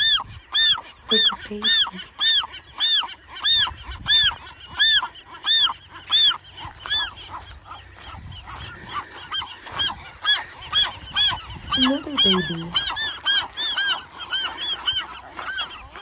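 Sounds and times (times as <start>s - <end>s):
faint gulls calling: 0.0s - 16.0s
gull squawking: 0.0s - 16.0s.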